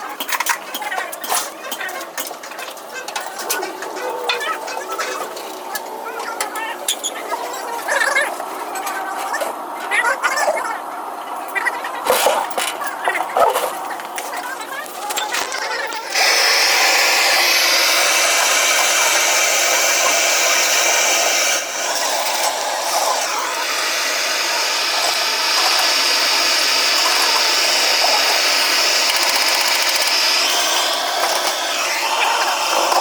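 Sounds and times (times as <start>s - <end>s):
hissing whir of a tool: 15.4s - 33.0s.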